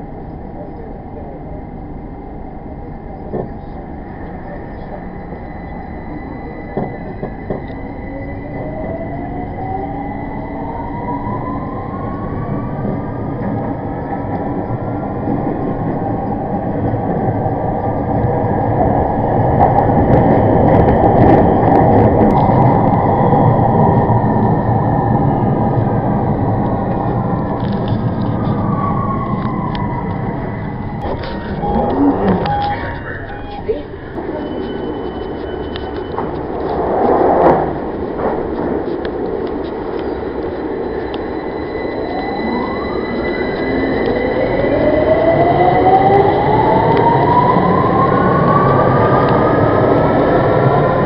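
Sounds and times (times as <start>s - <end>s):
train carriage rumble and rattle: 0.0s - 51.0s
train whine gliding down: 0.0s - 51.0s
train motors whining: 25.4s - 48.0s.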